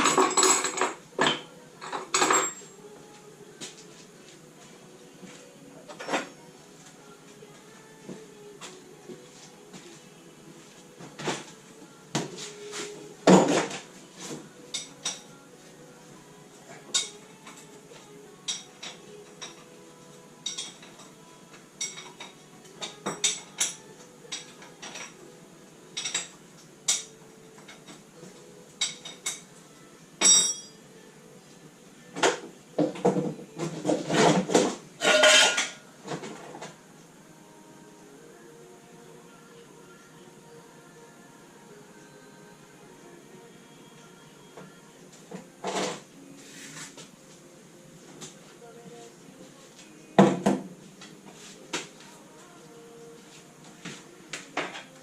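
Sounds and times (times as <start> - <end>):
hand tools and metal clinking: 0.0 - 4.0, 16.7 - 25.2, 26.0 - 28.0, 28.8 - 29.5, 30.2 - 30.8, 32.2 - 36.6.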